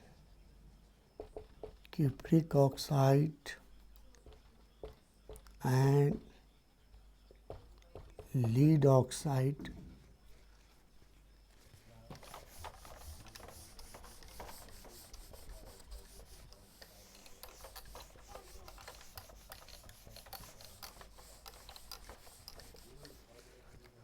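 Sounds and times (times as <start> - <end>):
pen scratching while writing: 12.1 - 24.0.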